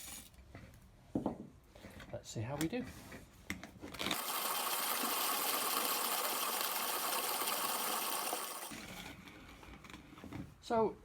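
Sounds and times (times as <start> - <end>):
manual coffee grinder whirring: 3.9 - 9.3.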